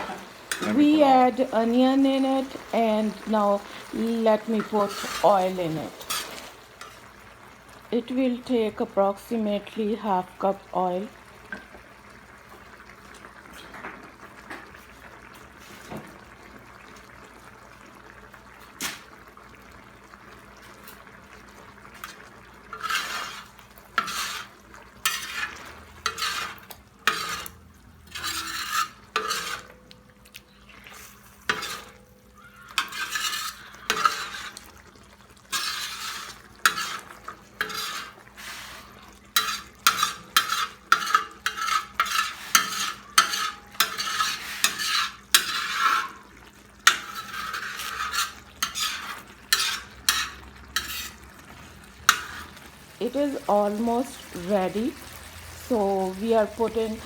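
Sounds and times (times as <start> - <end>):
spatula scraping a pan: 0.0 - 7.3, 20.6 - 57.0
food sizzling in oil: 0.0 - 57.0.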